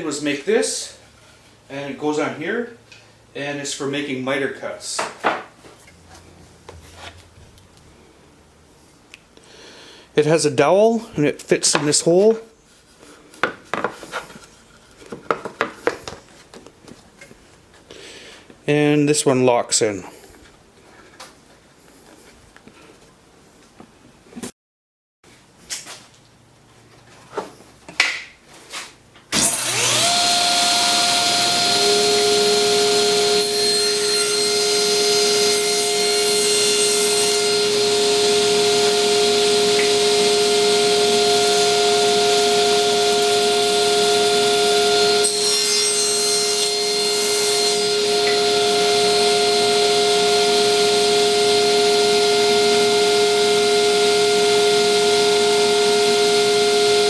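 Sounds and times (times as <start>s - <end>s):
table saw whining: 29.3s - 57.0s
saw blade cutting wood: 29.4s - 57.0s.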